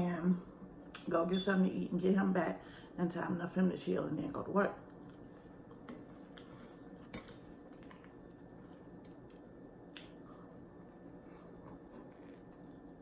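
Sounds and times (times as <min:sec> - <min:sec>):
soft mouth clicks and smacks: 0:09.8 - 0:10.2
person chewing: 0:09.8 - 0:10.4.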